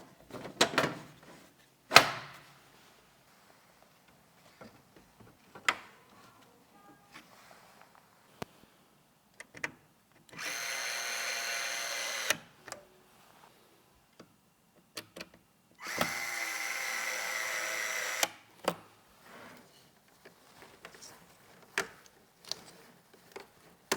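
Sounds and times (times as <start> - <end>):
electric screwdriver whine: 10.4 - 12.4, 15.8 - 18.3.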